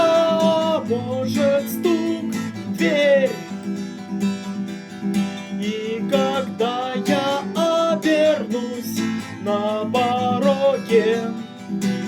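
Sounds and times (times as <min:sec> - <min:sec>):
person singing with vibrato: 0:00.0 - 0:03.5, 0:05.6 - 0:11.5
acoustic guitar strumming: 0:00.0 - 0:12.0.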